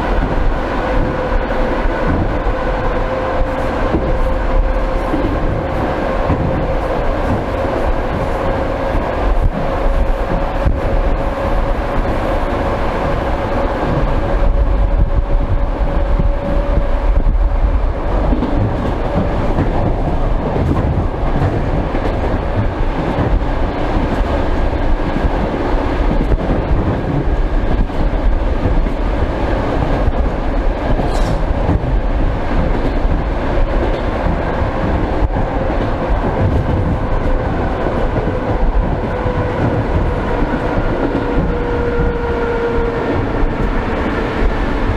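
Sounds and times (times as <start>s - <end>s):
electric train rumbling: 0.0s - 44.9s
wheels clattering over rail joints: 30.9s - 32.0s.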